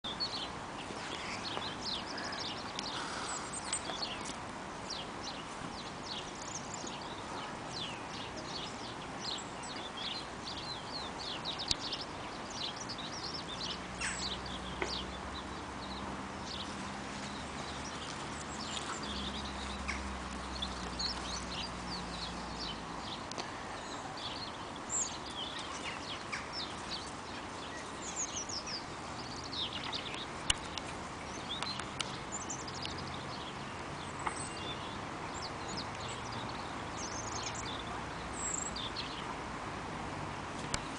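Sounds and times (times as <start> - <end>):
small birds chirping: 0.0 - 39.6.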